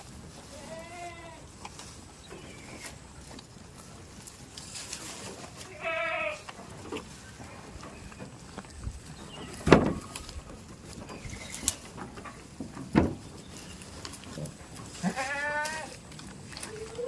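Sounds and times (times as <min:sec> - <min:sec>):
goat bleating: 0:00.4 - 0:01.6, 0:05.6 - 0:06.5, 0:14.4 - 0:16.0.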